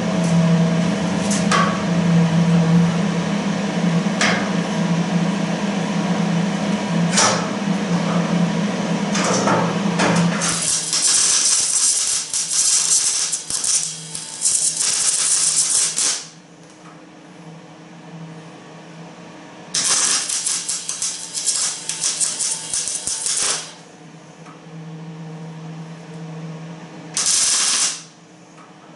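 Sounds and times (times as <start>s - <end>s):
steady hum: 0.0s - 28.9s
welding arc crackling: 10.4s - 16.4s, 19.7s - 23.8s, 27.2s - 28.2s.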